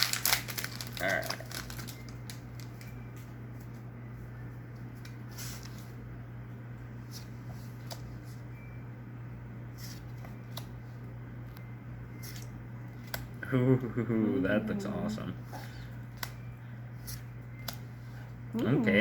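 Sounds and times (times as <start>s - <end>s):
foil wrapper crinkling: 0.0s - 3.0s
steady low hum: 0.0s - 19.0s.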